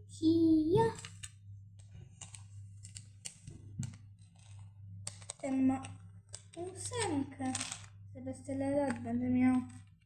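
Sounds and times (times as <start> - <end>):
steady low hum: 0.0 - 10.0
plastic building pieces clicking: 2.2 - 7.9, 8.7 - 10.0.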